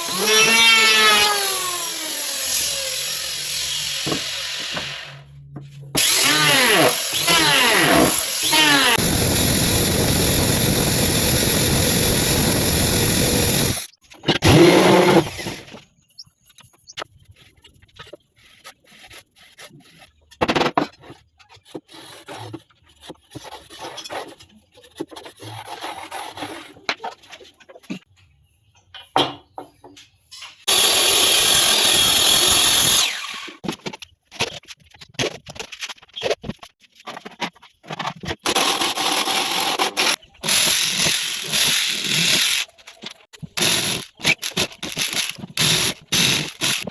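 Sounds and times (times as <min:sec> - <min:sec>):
power tool running: 0:06.0 - 0:15.7, 0:30.7 - 0:33.5, 0:43.6 - 0:46.9.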